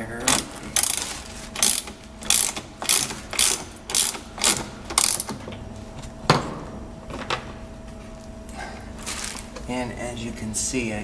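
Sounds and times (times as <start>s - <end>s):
ratchet wrench ratcheting: 0.2s - 5.4s.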